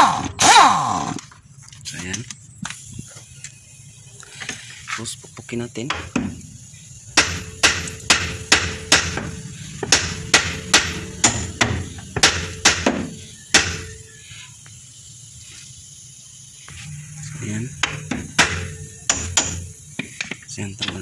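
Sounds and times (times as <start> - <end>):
hammer striking steel: 7.2 - 14.0, 17.8 - 19.7.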